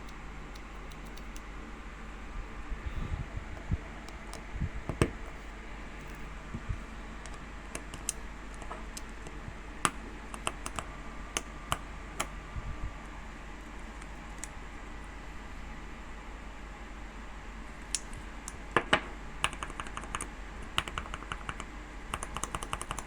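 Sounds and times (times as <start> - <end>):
mechanical keyboard switch clicks: 0.0 - 1.5, 9.8 - 12.3.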